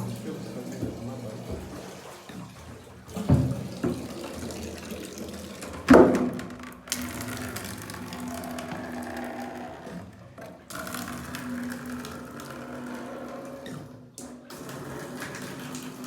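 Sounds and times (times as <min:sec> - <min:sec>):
water running and splashing: 0:00.0 - 0:06.1
sudden water gushes or knocks: 0:00.0 - 0:09.3.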